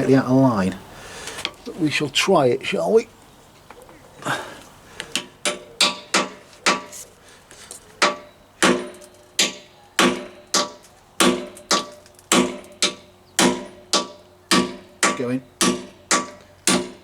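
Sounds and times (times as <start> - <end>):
hammer striking metal: 5.4 - 6.9, 8.0 - 17.0.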